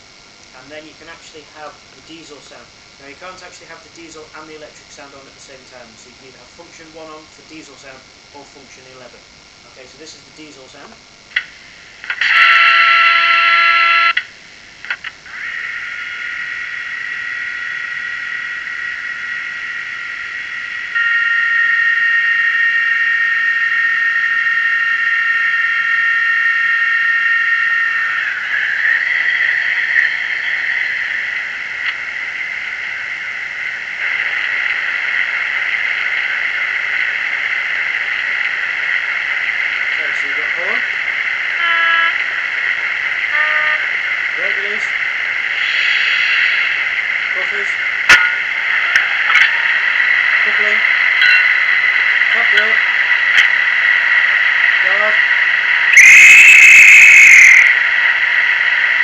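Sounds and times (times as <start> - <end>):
loud many-toned horn blast: 12.3 - 14.2, 41.6 - 42.2, 43.3 - 44.0, 55.9 - 57.7.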